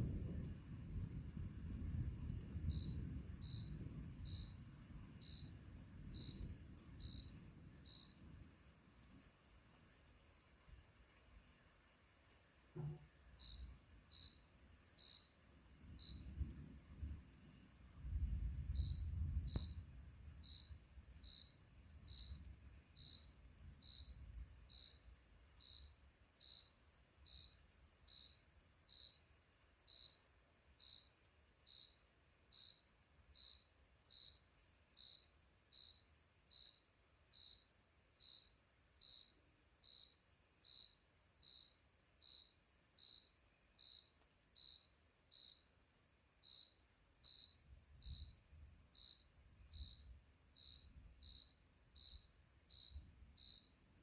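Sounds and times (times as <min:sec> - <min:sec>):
faint low rumble: 0:00.0 - 0:09.3, 0:15.6 - 0:24.8
cricket chirping: 0:00.0 - 0:54.0.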